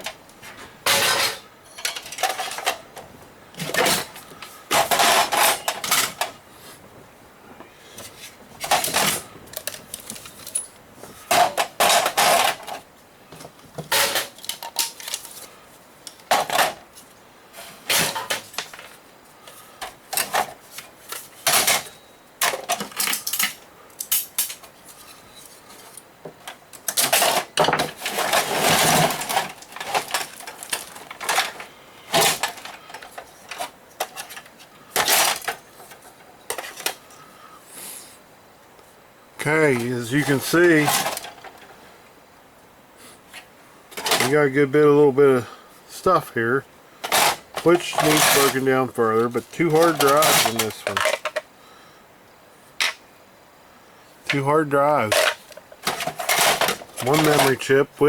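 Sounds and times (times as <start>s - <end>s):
metal computer parts clattering: 0.8s - 2.9s, 3.6s - 6.4s, 8.6s - 12.8s, 13.8s - 15.4s, 21.4s - 24.7s, 26.5s - 37.0s, 39.7s - 41.6s, 44.0s - 44.3s, 47.0s - 51.4s, 55.0s - 57.7s.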